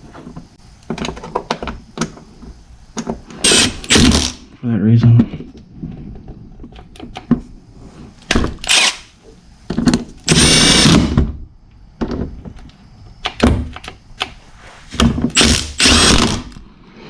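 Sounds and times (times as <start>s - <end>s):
cordless impact gun bursts: 3.4s - 4.4s, 8.6s - 9.1s, 10.3s - 11.2s, 15.4s - 16.6s.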